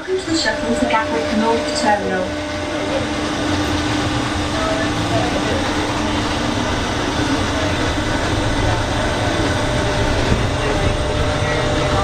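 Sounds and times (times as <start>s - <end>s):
shuttle train running low rumble: 0.0s - 12.0s
rattle from bumpy ride: 2.9s - 12.0s.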